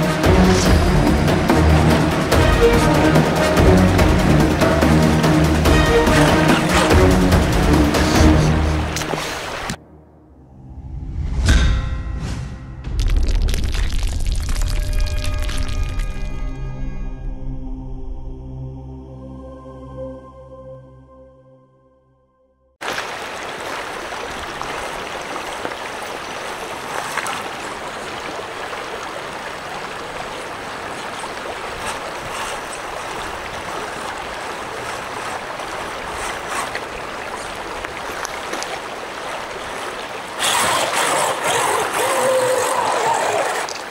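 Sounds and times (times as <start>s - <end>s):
creek water rushing: 0.0s - 9.8s, 22.8s - 43.9s.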